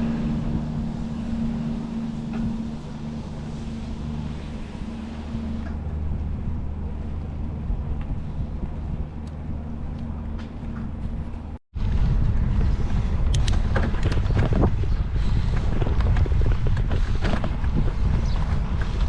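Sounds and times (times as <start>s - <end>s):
vehicle engine drone: 0.0s - 19.0s
wind rumble on microphone: 0.0s - 19.0s.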